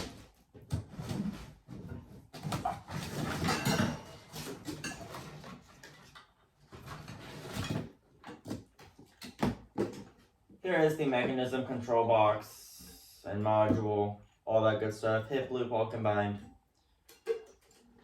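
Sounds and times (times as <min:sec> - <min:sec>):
plastic and cardboard rustling: 0:00.0 - 0:10.4.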